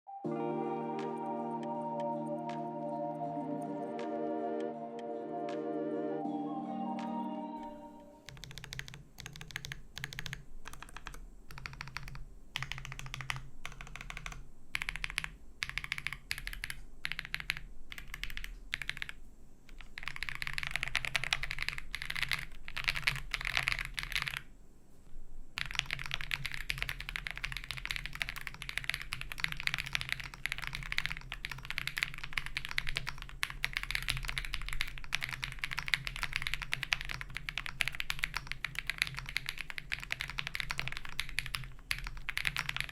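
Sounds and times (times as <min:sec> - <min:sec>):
mechanical keyboard typing: 0:08.3 - 0:24.5, 0:25.6 - 0:42.9.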